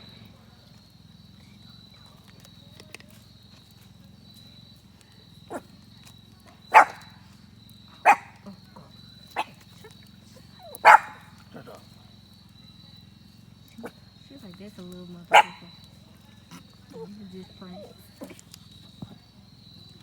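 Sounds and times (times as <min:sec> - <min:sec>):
dog barking: 0:05.5 - 0:05.8, 0:06.5 - 0:07.2, 0:08.0 - 0:08.4, 0:09.4 - 0:09.6, 0:10.6 - 0:11.9, 0:15.3 - 0:15.8.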